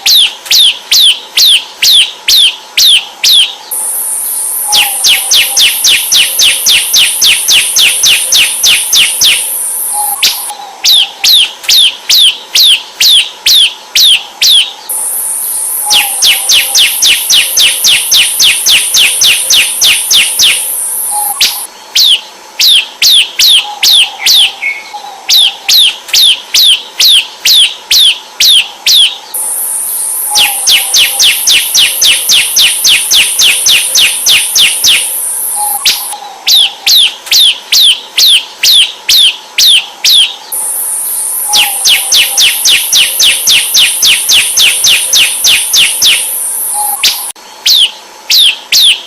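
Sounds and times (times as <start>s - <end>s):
bird chirps: 0.0s - 49.0s
very high-pitched buzz: 0.0s - 49.0s.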